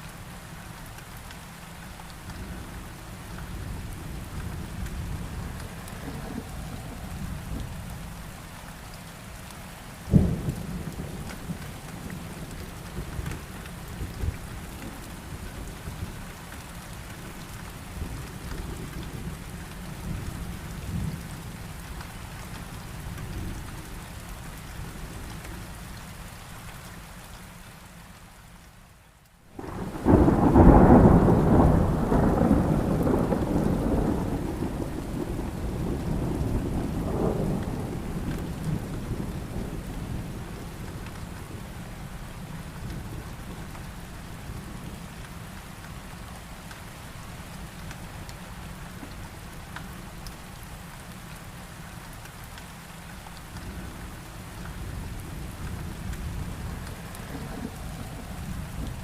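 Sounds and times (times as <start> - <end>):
steady rain: 0.0 - 59.0
thunder rumbling: 3.6 - 8.4, 29.6 - 41.8, 54.6 - 59.0.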